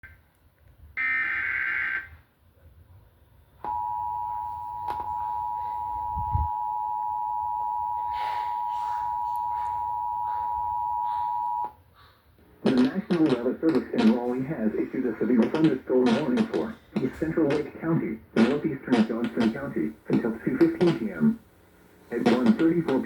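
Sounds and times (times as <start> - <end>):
two-tone attention signal: 3.7 - 11.7.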